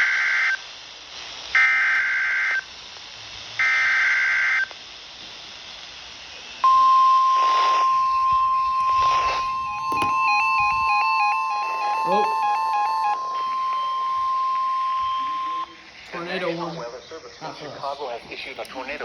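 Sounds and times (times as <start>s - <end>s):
hiss: 0.0s - 1.8s, 2.6s - 3.6s, 4.6s - 6.6s
steady alarm tone: 6.6s - 15.9s
screeching digital data bursts: 6.6s - 17.8s.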